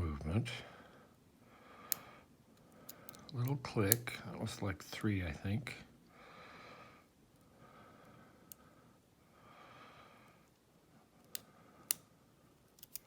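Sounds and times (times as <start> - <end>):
slow breathing: 0.6 - 3.3, 6.1 - 12.4
lock pick clicks: 12.8 - 13.0.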